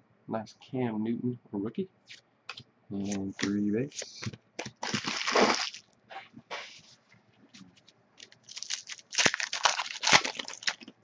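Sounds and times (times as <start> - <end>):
foil wrapper crinkling and tearing: 4.6 - 5.9, 8.2 - 11.0.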